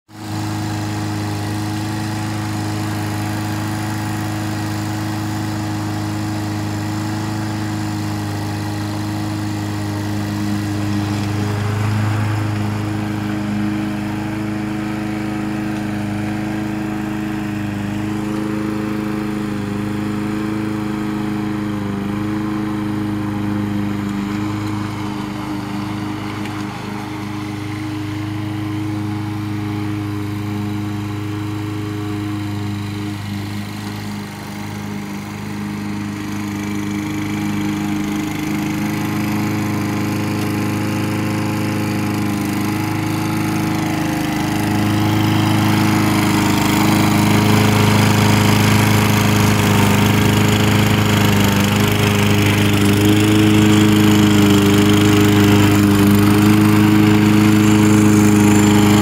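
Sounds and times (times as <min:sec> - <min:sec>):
lawn mower engine running: 0:00.1 - 0:59.0.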